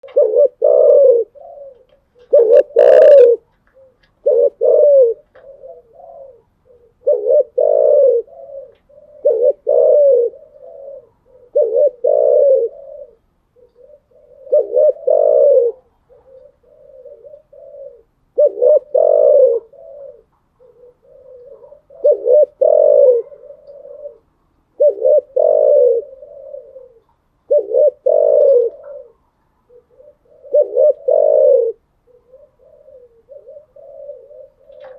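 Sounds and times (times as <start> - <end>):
dove cooing: 0.0 - 34.9.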